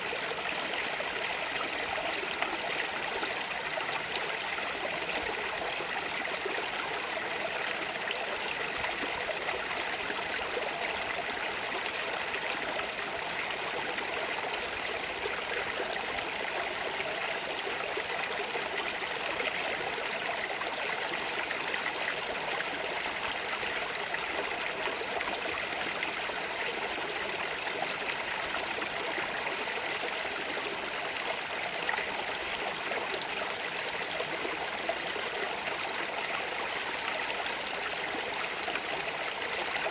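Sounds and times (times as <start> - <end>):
stream babbling over stones: 0.0 - 39.9.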